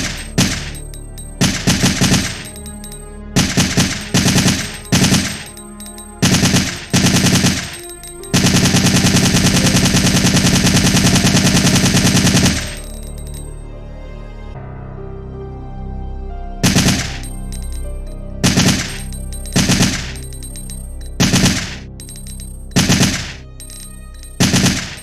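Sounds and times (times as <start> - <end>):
low musical drone: 0.0 - 25.0
assault rifle automatic fire: 1.4 - 2.6, 3.4 - 5.6, 6.2 - 13.0, 16.6 - 17.3, 18.4 - 20.2, 21.2 - 21.8, 22.8 - 23.4, 24.4 - 25.0.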